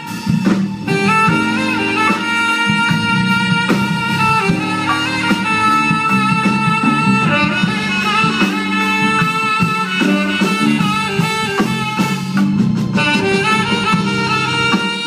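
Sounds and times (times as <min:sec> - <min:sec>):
bass: 0:00.0 - 0:15.0
drum kit: 0:00.0 - 0:15.0
saxophone melody: 0:00.0 - 0:15.0.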